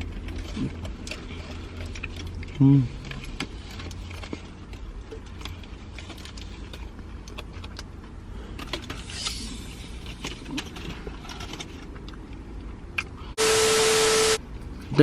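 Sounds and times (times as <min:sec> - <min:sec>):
low hum inside car: 0:12.2 - 0:15.0.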